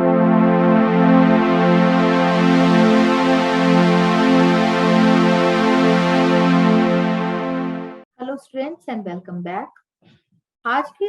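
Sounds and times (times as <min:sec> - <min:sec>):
synthesizer chords: 0:00.0 - 0:08.0.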